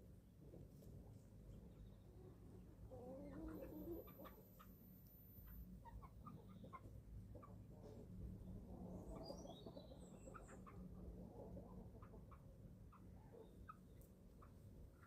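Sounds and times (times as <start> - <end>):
chicks peeping: 2.6 - 4.8, 5.4 - 15.0.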